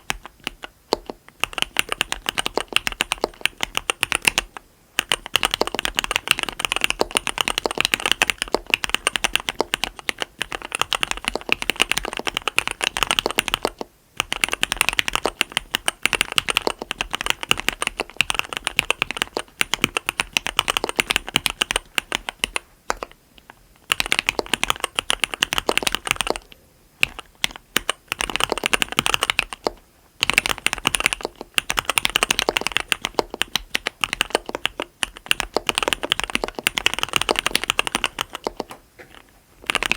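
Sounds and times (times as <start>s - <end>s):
fast typing on mechanical keyboard: 0.0s - 23.2s, 23.8s - 26.4s, 27.0s - 39.9s.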